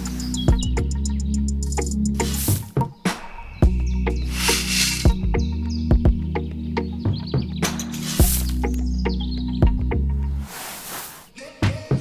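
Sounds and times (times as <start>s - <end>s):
background music with beat: 0.0s - 10.2s
hissing swell: 2.2s - 2.8s, 4.2s - 5.2s.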